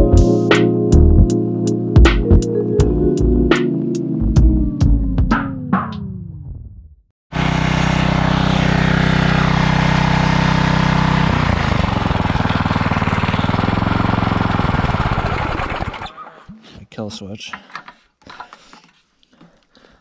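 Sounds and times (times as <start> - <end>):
pressure washer drone: 7.3 - 16.1.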